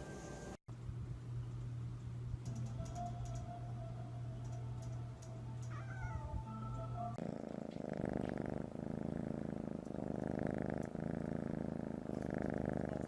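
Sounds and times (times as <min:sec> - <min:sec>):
faint steady hum: 0:00.0 - 0:13.0
cat purring: 0:04.6 - 0:13.0.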